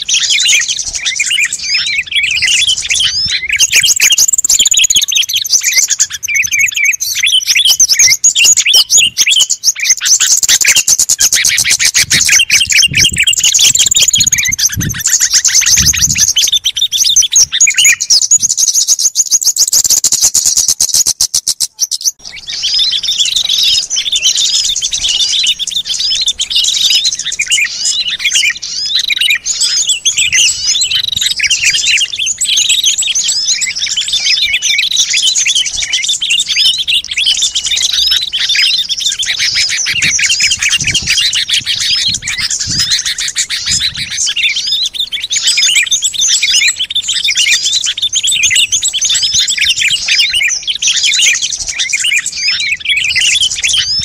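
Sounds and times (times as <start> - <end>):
songbirds chirping and twittering: 0.0 - 54.0.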